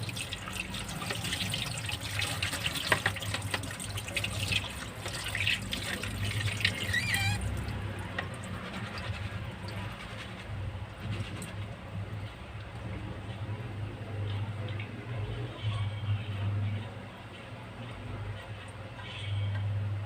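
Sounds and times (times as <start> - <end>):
tap water running and splashing: 0.0 - 12.9.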